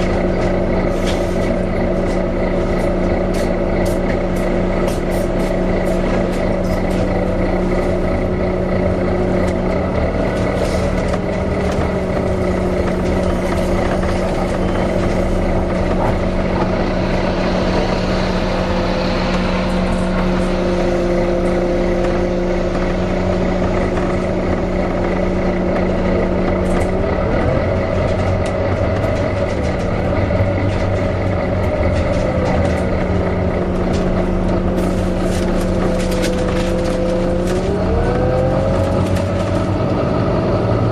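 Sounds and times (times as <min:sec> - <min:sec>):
bus engine running: 0:00.0 - 0:40.9.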